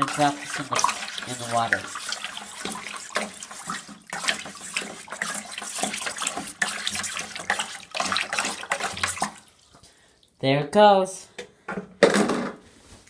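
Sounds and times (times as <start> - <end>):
water sloshing and splashing: 0.0 - 10.4.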